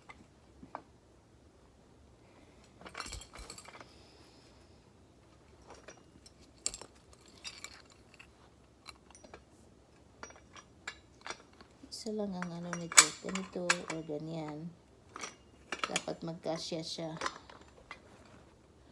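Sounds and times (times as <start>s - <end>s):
grinder parts clicking and clinking: 5.6s - 8.3s, 10.2s - 18.4s.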